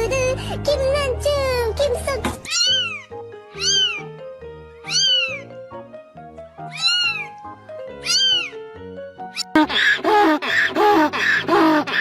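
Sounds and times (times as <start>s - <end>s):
background music: 0.0s - 12.0s
cat meowing: 2.5s - 4.2s, 4.8s - 5.5s, 6.6s - 7.4s, 8.0s - 8.6s.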